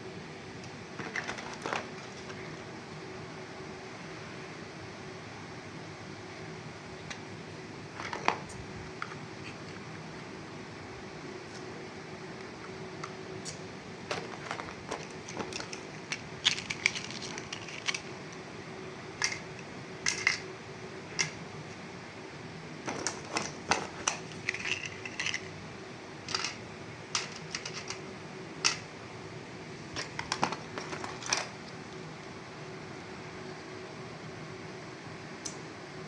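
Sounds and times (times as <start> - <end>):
plastic toy parts clicking: 15.3 - 18.1.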